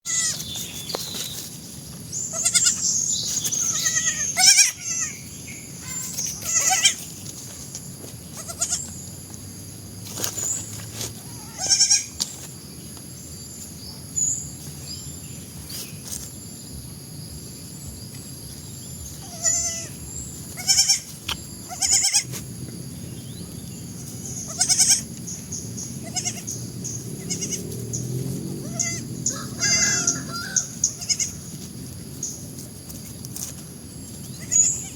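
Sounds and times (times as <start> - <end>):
goats bleating: 0.0 - 0.4, 2.3 - 2.9, 3.6 - 5.3, 5.9 - 7.0, 8.3 - 8.9, 11.2 - 12.2, 19.2 - 22.3, 24.0 - 25.1, 26.0 - 26.6, 27.2 - 27.6, 28.6 - 31.4.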